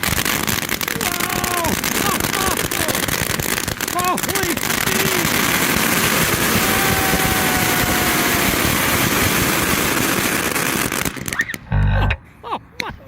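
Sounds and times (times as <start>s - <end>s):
ground fountain firework hissing: 0.0s - 11.5s
short loud low thud: 11.7s - 12.2s.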